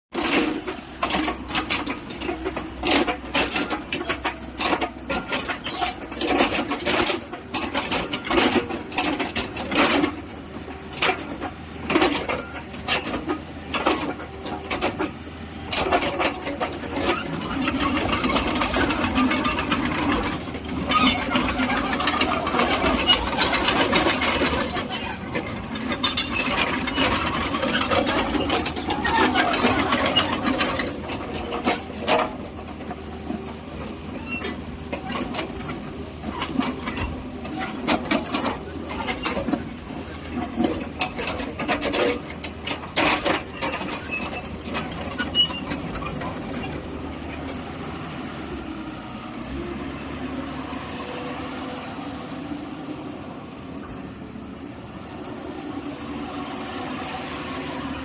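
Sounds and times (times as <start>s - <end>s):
metallic clanks and rattles: 0.1s - 51.8s
excavator diesel engine running: 0.1s - 58.0s.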